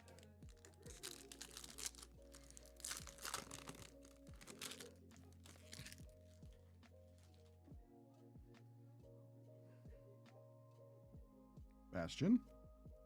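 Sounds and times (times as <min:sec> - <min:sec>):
trading cards crinkling: 0:00.0 - 0:06.5
quiet background music: 0:00.0 - 0:13.0.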